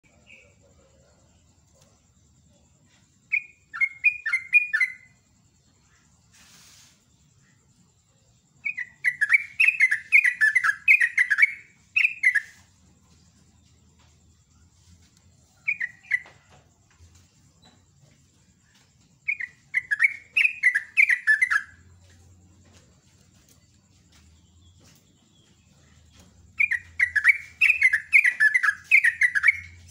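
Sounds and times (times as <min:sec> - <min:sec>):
bird singing chattering phrases: 0:08.6 - 0:12.6, 0:19.3 - 0:21.8, 0:24.6 - 0:29.9.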